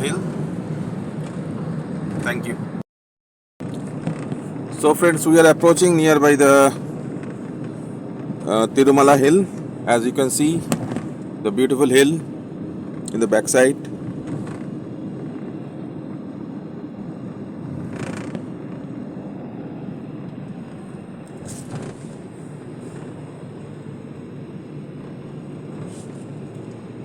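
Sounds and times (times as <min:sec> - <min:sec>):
car road and engine noise: 0:00.0 - 0:02.9, 0:03.6 - 0:27.0.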